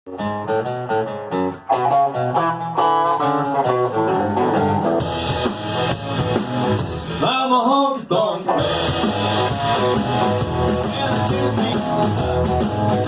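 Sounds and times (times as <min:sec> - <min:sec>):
guitar riff: 0:00.1 - 0:07.4, 0:08.2 - 0:13.0
bass guitar: 0:00.1 - 0:13.0
drums and cymbals: 0:04.8 - 0:07.3, 0:08.6 - 0:13.0.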